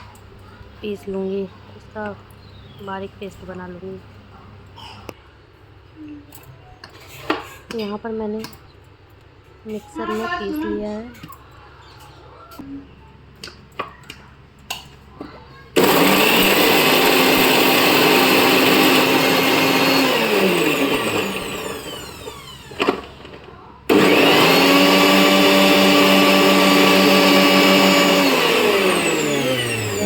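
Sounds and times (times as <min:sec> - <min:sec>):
motor winding down whine: 0:15.8 - 0:23.3, 0:23.9 - 0:30.0
mixer grinder motor running: 0:15.8 - 0:30.0.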